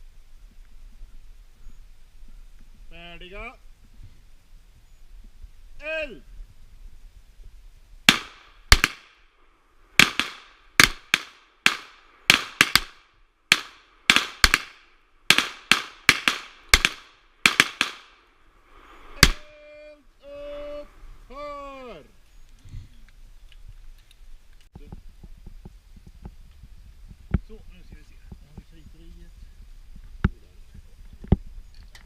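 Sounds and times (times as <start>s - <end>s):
pistol shots: 8.1s - 9.2s, 10.0s - 18.2s, 19.2s - 19.4s
pitched call with falling tone: 19.0s - 22.2s.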